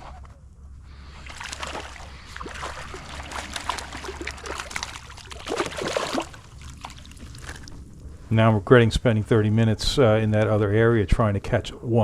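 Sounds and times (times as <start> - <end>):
water splashing against kayak: 1.1 - 7.8
small clicks and splashes: 1.2 - 7.8.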